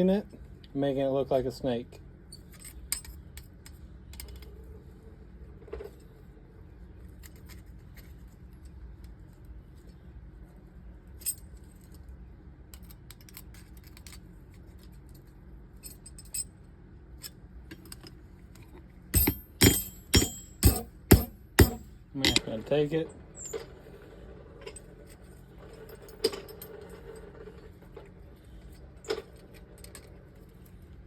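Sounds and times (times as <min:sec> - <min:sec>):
steady low hum: 0:00.0 - 0:31.0
hammer blows on anvil: 0:19.2 - 0:22.6
metal tools clinking against steel: 0:19.2 - 0:23.7.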